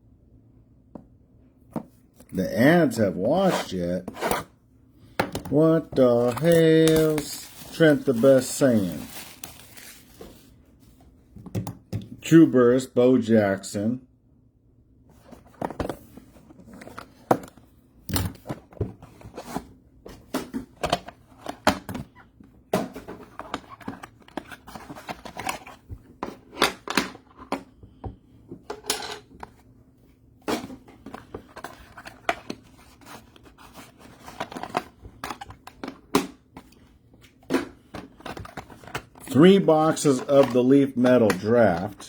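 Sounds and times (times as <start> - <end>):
plastic wrap tearing and crinkling: 6.4 - 10.2.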